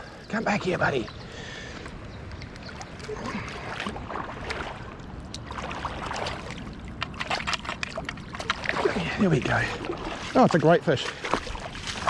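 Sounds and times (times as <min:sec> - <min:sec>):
river water running: 0:00.0 - 0:12.0
fish splashing in water: 0:02.4 - 0:12.0.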